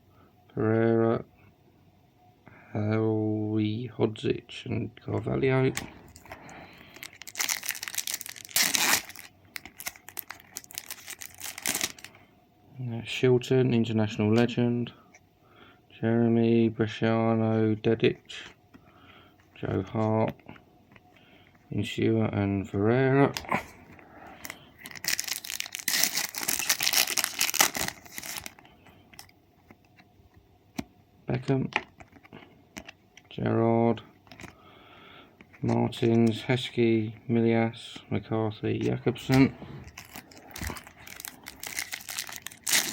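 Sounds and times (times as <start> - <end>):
card packet wrapper crinkling: 6.1 - 12.1, 24.4 - 29.3, 39.9 - 42.9
wrapper ripping: 6.9 - 12.1, 24.4 - 28.6, 40.0 - 42.9.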